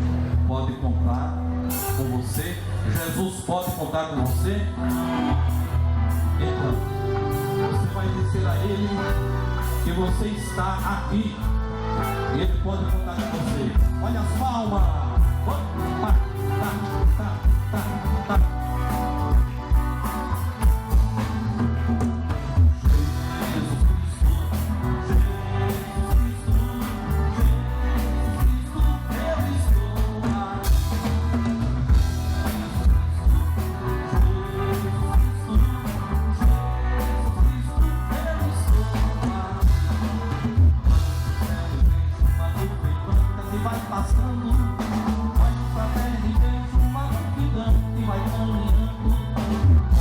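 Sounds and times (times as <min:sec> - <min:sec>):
heavy bass: 0:00.0 - 0:50.0
driving drum beat: 0:01.7 - 0:50.0
person singing: 0:02.6 - 0:22.0, 0:22.8 - 0:50.0.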